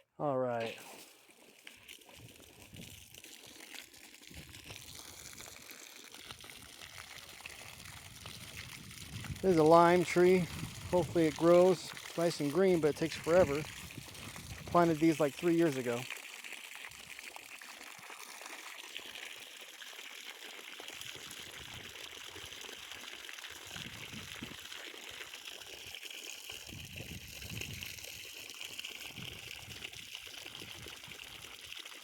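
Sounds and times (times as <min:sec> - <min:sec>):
water running and splashing: 0:00.6 - 0:32.0.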